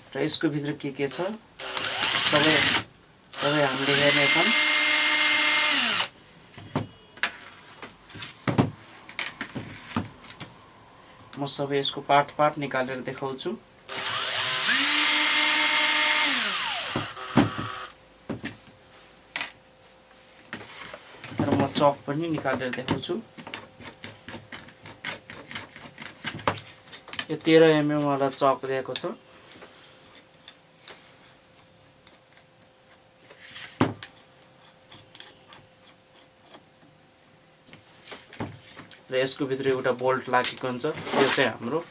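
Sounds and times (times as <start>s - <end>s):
faint steady hum: 0.0s - 41.9s
drill clicks: 1.6s - 6.1s, 13.9s - 17.9s
electric drill motor whine: 1.6s - 6.1s, 13.9s - 18.0s.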